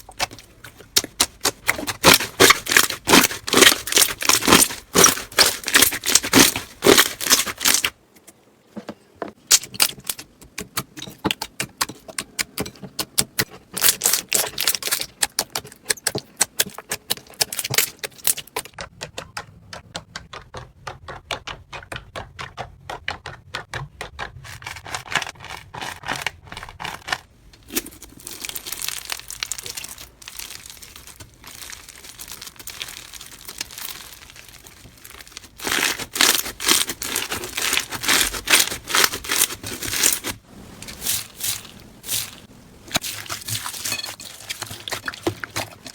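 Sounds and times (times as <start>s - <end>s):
slime crackling and popping: 0.0s - 7.9s, 13.7s - 18.7s, 26.8s - 45.9s.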